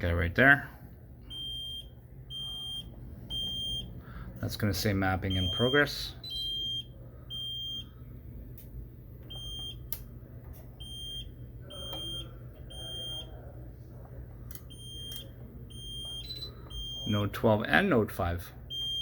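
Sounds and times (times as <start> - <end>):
high-pitched electronic beeps: 5.3 - 7.8, 14.7 - 17.2.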